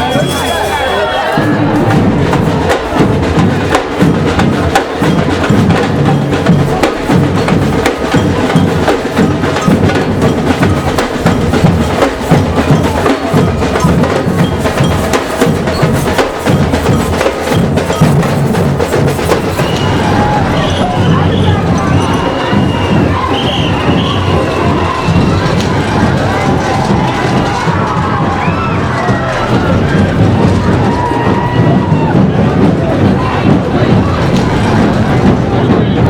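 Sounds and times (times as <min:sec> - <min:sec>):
marching drums and percussion: 0:00.0 - 0:36.0.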